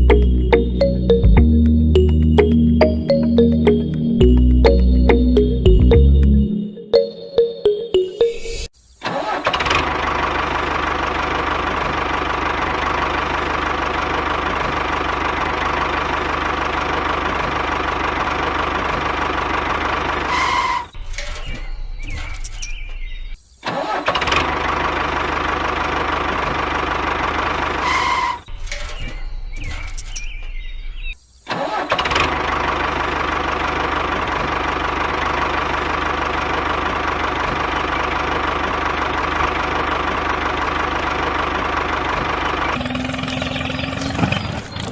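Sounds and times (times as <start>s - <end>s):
engine running: 0.0s - 7.8s, 9.6s - 20.4s, 24.5s - 27.8s, 32.1s - 44.9s.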